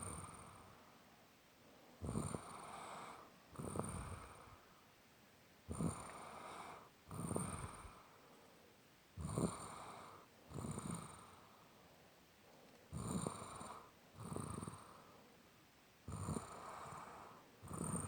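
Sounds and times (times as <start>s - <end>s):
rasping snores: 0.0s - 0.8s, 2.0s - 4.5s, 5.7s - 8.0s, 9.2s - 11.5s, 12.9s - 15.1s, 16.1s - 18.0s.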